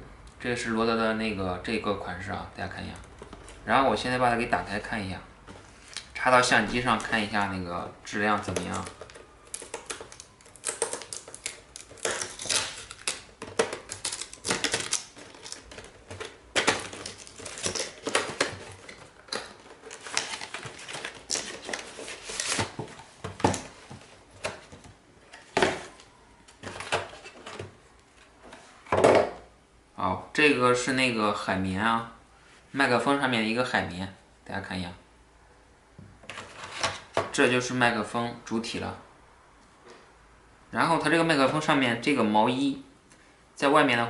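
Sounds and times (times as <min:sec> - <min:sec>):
packaging being handled: 0:08.1 - 0:27.7.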